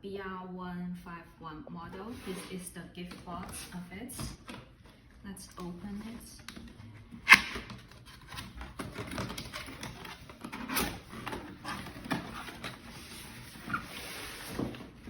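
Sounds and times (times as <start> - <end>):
cardboard box rustling and scraping: 2.0 - 2.6, 6.9 - 15.0.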